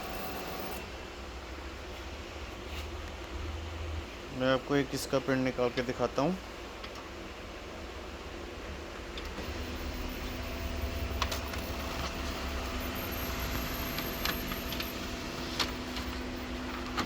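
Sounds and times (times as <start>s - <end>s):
laser printer humming: 0.0s - 1.0s, 9.3s - 17.0s
printer sharp clicks: 9.3s - 17.0s.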